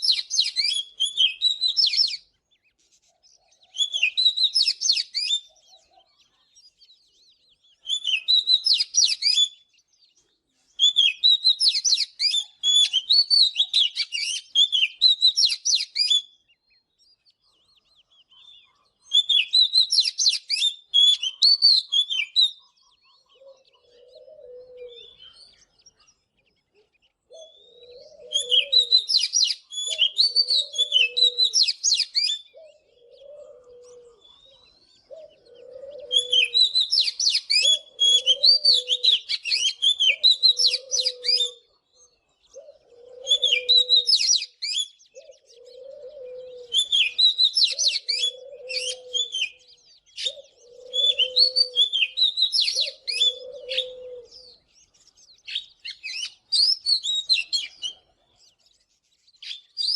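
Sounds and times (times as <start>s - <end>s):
bird singing whistled phrases: 0.0s - 2.3s, 3.7s - 5.7s, 7.3s - 9.7s, 10.8s - 16.8s, 18.4s - 22.7s, 27.4s - 32.8s, 36.0s - 41.7s, 43.3s - 45.9s, 46.7s - 54.6s, 55.4s - 58.1s, 59.4s - 59.9s
low bird call: 17.4s - 58.6s.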